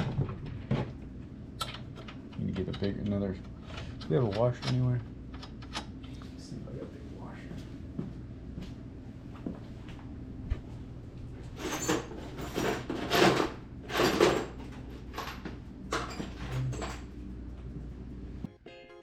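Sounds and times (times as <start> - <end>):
steady low hum: 0.0 - 18.5
parts scraping in a drawer: 11.6 - 14.7.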